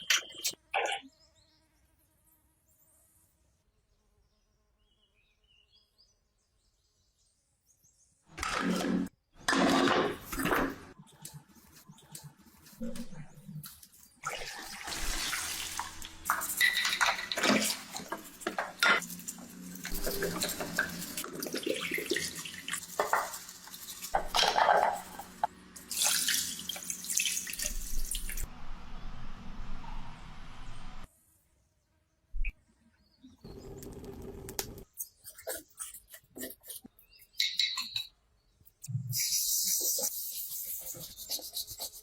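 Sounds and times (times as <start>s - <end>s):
water running and splashing: 14.2s - 25.2s.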